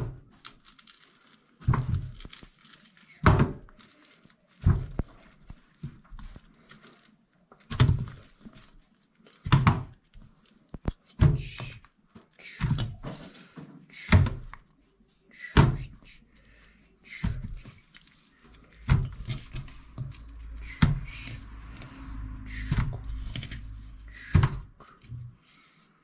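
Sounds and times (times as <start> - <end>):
low steady rumble: 18.4 - 25.4.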